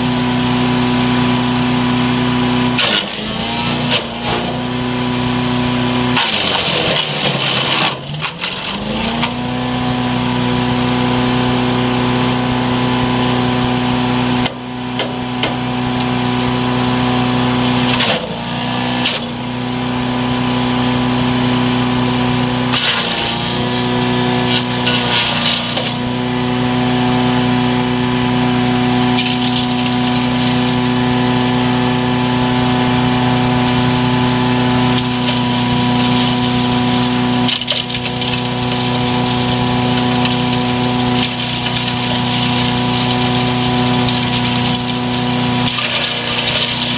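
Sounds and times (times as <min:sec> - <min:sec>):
wood chipper engine running: 0:00.0 - 0:46.9
wood cracking and rattling: 0:35.0 - 0:44.9.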